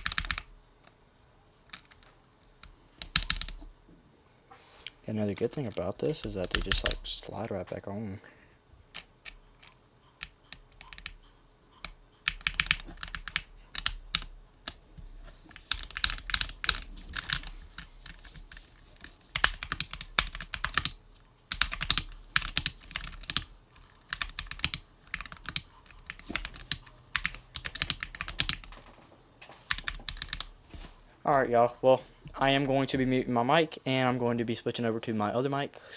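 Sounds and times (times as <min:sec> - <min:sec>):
keyboard typing clicks: 0:09.0 - 0:14.8.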